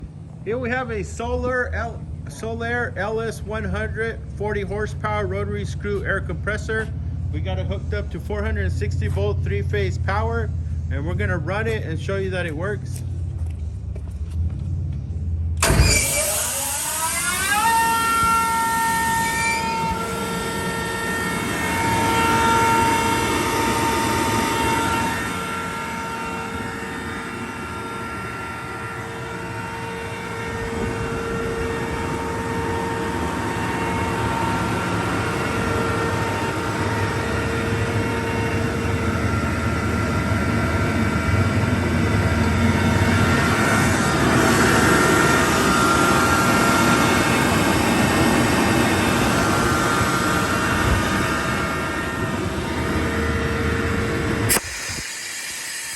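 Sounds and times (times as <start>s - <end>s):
air compressor running: 15.6s - 55.9s.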